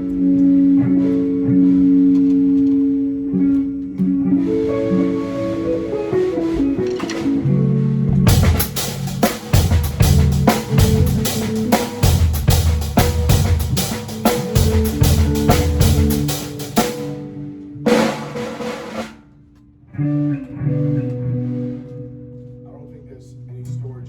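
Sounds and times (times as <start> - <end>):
electric guitar: 0.0 - 18.7, 19.6 - 22.6
bass guitar: 0.0 - 22.6
drum kit beat: 8.1 - 17.2, 17.9 - 19.2
cymbal crash: 17.9 - 19.2.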